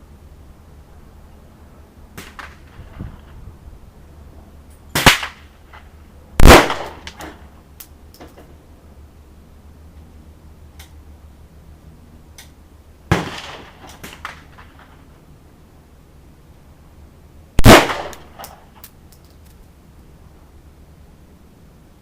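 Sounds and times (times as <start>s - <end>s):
gunshots with echo: 17.6s - 18.2s.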